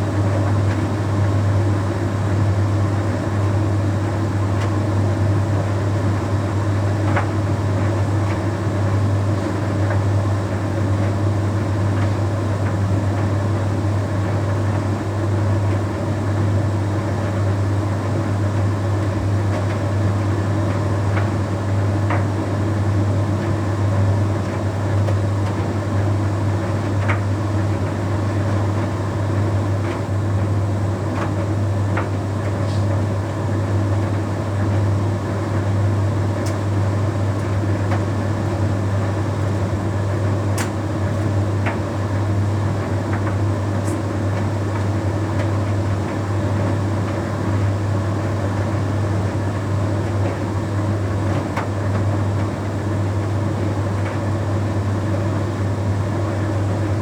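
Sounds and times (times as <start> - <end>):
tumble dryer running: 0.0 - 11.5, 18.6 - 57.0.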